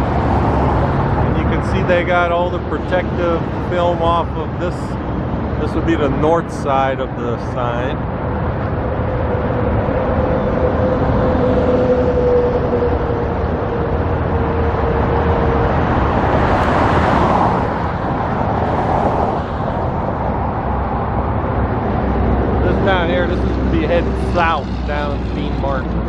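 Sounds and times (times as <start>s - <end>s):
road traffic passing: 0.0s - 26.0s.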